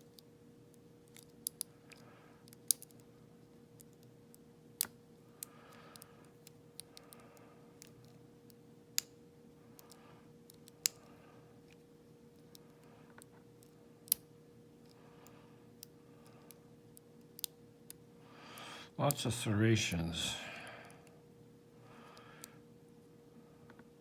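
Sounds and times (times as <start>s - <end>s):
steady low hum: 18.1s - 24.0s.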